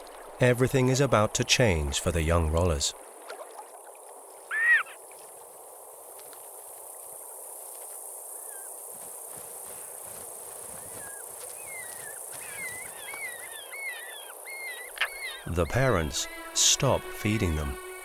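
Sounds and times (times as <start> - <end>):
steady outdoor hiss: 0.0 - 18.0
short falling bird chirps: 4.5 - 5.0, 10.9 - 15.5.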